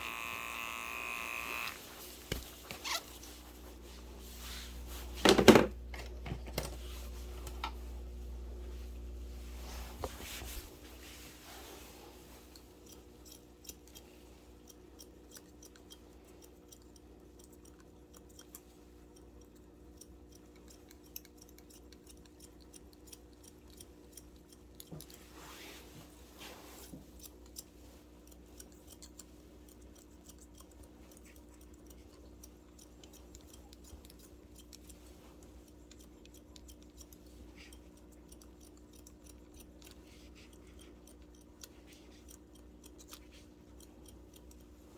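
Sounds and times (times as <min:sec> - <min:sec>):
shears snipping hair: 0:00.0 - 0:08.1, 0:09.3 - 0:44.9
steady low hum: 0:00.0 - 0:17.9.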